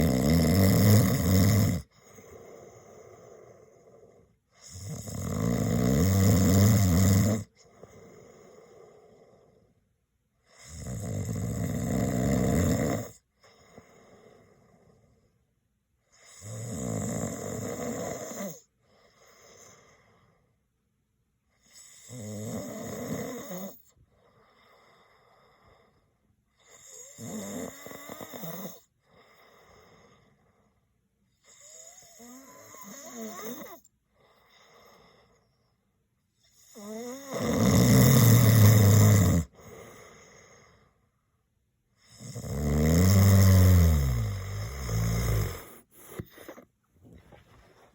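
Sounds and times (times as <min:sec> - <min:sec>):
man snoring: 0:00.0 - 0:09.6, 0:10.5 - 0:13.2, 0:16.2 - 0:18.7, 0:21.7 - 0:23.9, 0:26.7 - 0:30.2, 0:31.5 - 0:33.9, 0:36.5 - 0:40.8, 0:42.0 - 0:46.6
soft breath: 0:01.8 - 0:04.5, 0:07.5 - 0:09.9, 0:13.4 - 0:15.5, 0:18.6 - 0:20.7, 0:23.9 - 0:26.3, 0:34.0 - 0:35.9, 0:39.5 - 0:41.4, 0:44.6 - 0:47.9.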